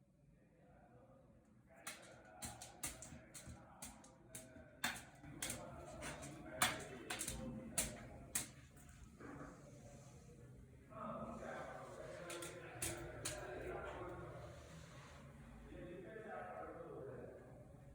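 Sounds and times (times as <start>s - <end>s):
sharp clicks and taps: 1.9s - 8.6s.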